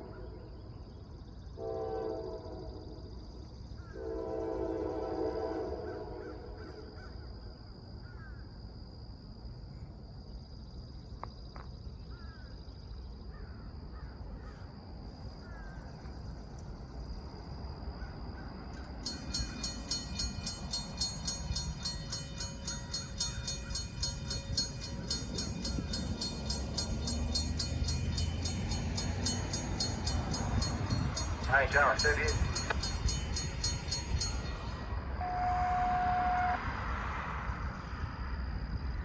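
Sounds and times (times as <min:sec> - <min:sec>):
locomotive horn: 0:01.6 - 0:02.9, 0:03.9 - 0:06.5, 0:35.1 - 0:37.0
freight train rumble: 0:15.0 - 0:39.0
rapid rhythmic ringing: 0:19.0 - 0:34.8.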